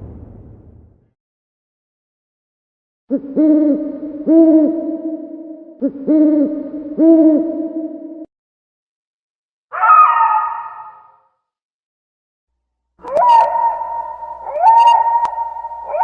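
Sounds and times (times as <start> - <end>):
owl hooting: 3.1 - 8.3, 9.7 - 11.2, 13.0 - 16.0.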